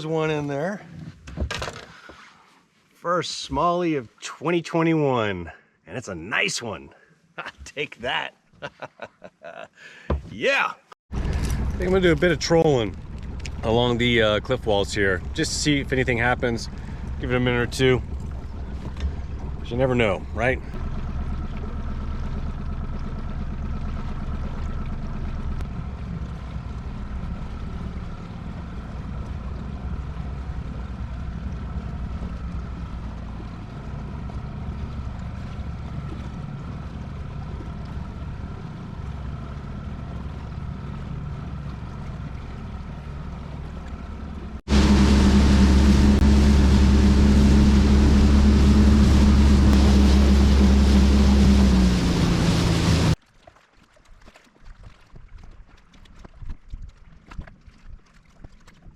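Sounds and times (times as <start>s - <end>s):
water noise: 7.7s - 58.9s
boat motor running: 11.1s - 53.2s.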